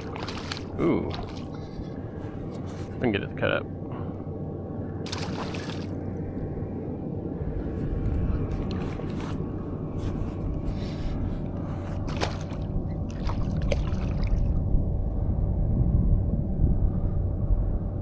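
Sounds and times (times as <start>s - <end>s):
water sloshing and dripping: 0.0s - 2.0s, 5.0s - 6.0s, 12.0s - 14.6s
steady low rumble: 0.0s - 18.0s
short splashy clicks: 5.1s - 5.9s.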